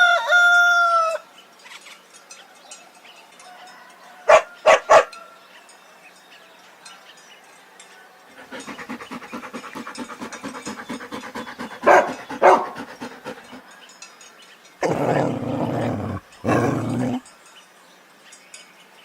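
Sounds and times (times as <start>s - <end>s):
dog panting: 8.4s - 13.7s.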